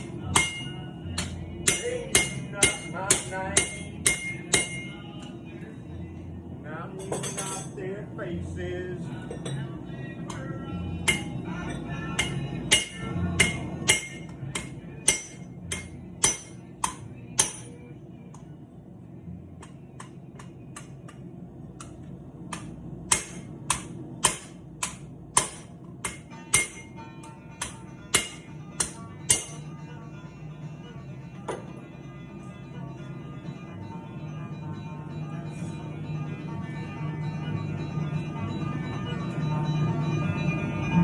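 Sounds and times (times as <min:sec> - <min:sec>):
hammer striking steel on anvil: 0:00.0 - 0:05.3, 0:07.0 - 0:07.8, 0:10.3 - 0:18.5, 0:19.6 - 0:21.2, 0:21.8 - 0:29.7
background music: 0:00.0 - 0:41.0.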